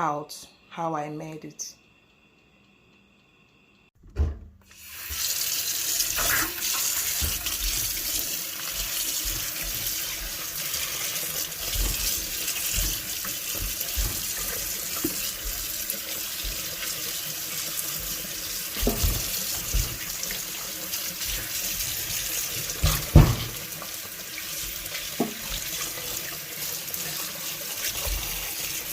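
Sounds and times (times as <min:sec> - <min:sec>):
tap running into a sink: 0:06.2 - 0:28.9.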